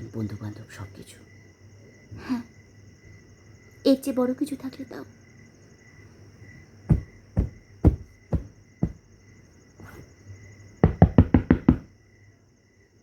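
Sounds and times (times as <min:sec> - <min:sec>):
crickets chirping: 0:00.0 - 0:13.0
heavy footsteps: 0:06.9 - 0:09.1, 0:10.8 - 0:11.9
knocking on a door: 0:06.9 - 0:09.1, 0:10.8 - 0:11.9.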